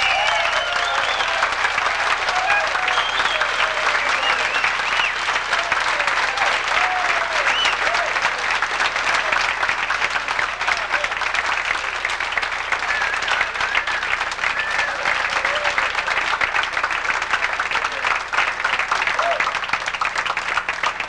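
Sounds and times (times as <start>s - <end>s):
voices calling out: 0.0s - 11.7s, 12.5s - 16.5s
audience applauding: 0.0s - 21.0s.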